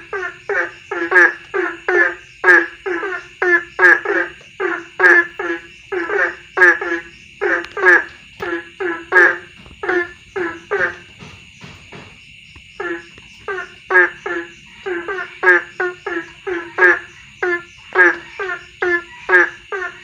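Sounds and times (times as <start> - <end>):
frogs croaking: 0.0 - 20.0
insects trilling: 0.0 - 20.0.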